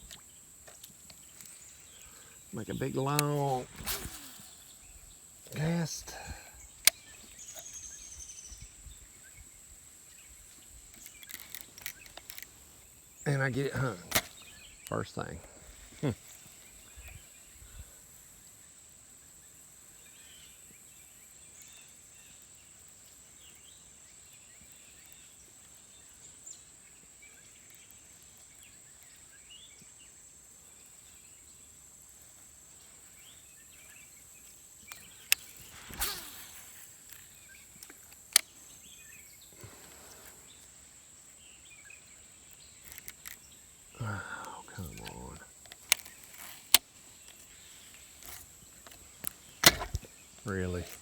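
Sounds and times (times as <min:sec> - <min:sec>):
insect chirring: 0:00.0 - 0:51.0
faint bird chirps: 0:01.2 - 0:18.0, 0:32.8 - 0:51.0
sharp clicks: 0:02.7 - 0:04.2, 0:11.0 - 0:12.6, 0:13.5 - 0:14.5, 0:42.8 - 0:43.5, 0:44.1 - 0:51.0.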